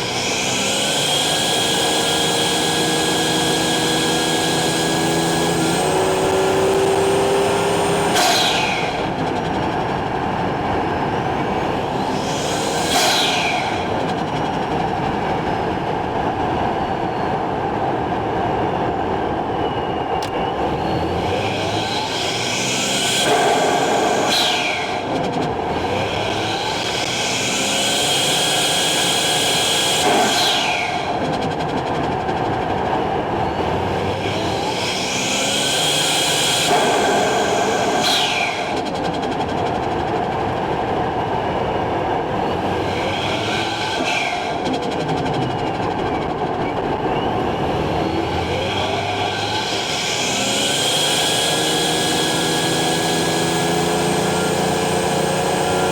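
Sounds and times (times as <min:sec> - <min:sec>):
car engine revving: 0:00.0 - 0:16.4, 0:20.4 - 0:55.9
turbo whistle and blow-off: 0:11.8 - 0:14.0.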